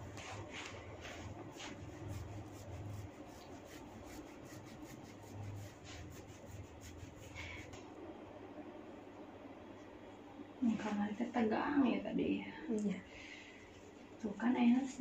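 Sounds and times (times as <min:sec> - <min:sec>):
fingers rubbing hair: 0:00.0 - 0:07.8
low steady hum: 0:00.0 - 0:15.0.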